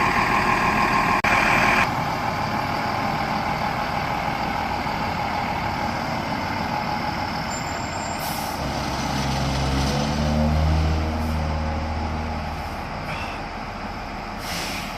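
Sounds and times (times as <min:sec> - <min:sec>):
fire truck engine running: 0:00.0 - 0:09.7, 0:10.8 - 0:14.9
short hiss: 0:14.4 - 0:14.9.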